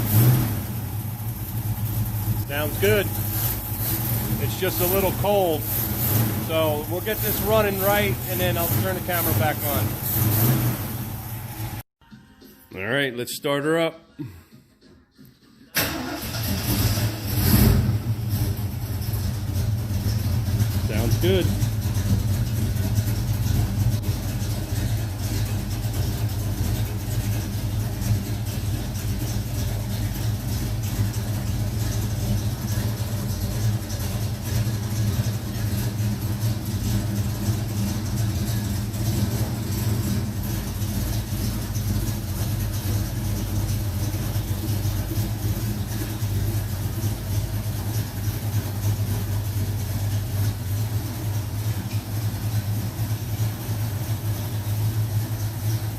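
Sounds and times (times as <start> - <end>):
vee eight engine idling: 0.0 - 11.8, 15.8 - 55.9.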